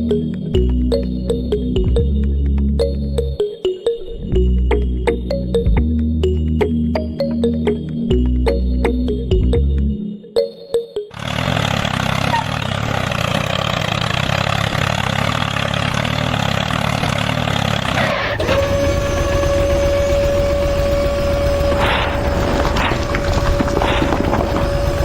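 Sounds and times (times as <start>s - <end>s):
motor running: 13.2s - 25.0s
high whine: 18.4s - 25.0s.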